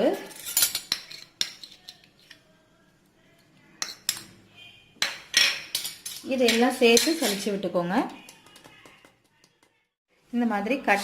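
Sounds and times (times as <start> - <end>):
spoon clinking against bowl: 3.8 - 4.4.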